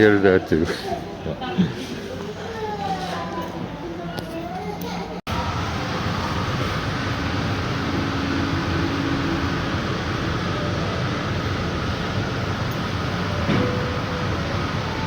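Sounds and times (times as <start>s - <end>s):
ventilation rushing: 5.3s - 15.0s.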